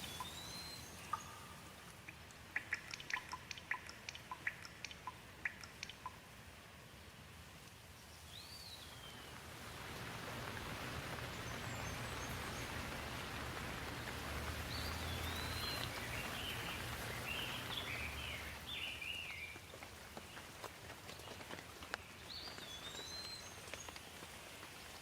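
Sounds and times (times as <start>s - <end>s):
bird chirping: 0.0s - 6.2s, 13.9s - 20.4s, 22.0s - 24.0s
rain hissing: 0.0s - 25.0s.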